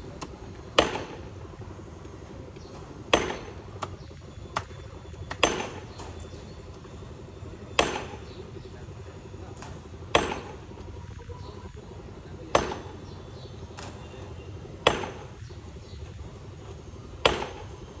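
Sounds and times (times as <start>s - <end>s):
hammer striking a wall: 4.6s - 5.8s, 14.9s - 15.2s.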